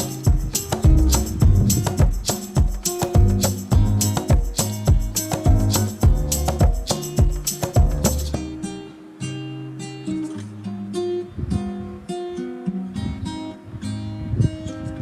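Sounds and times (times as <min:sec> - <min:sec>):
drum hits: 0:00.0 - 0:08.4
strummed acoustic guitar music: 0:00.0 - 0:15.0.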